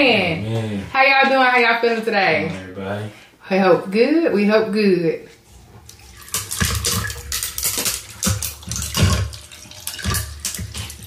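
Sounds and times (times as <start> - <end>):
utensils clattering on food: 6.0 - 11.0.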